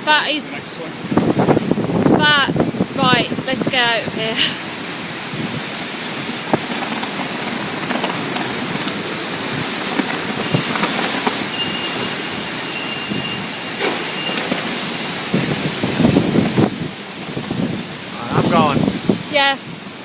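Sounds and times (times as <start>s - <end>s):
heavy rain and wind: 0.0s - 20.0s
faint high steady tone: 11.4s - 15.6s.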